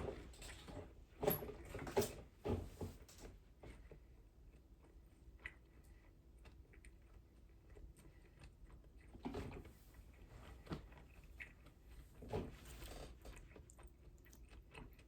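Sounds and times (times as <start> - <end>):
mouth chewing sounds: 3.9 - 12.0, 13.1 - 15.0.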